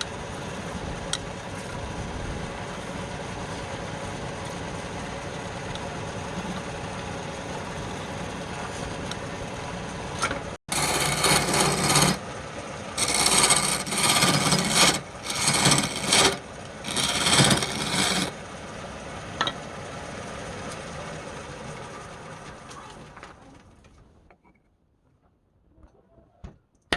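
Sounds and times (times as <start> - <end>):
wood being rasped: 2.5 - 4.6, 10.7 - 12.2, 13.0 - 18.4.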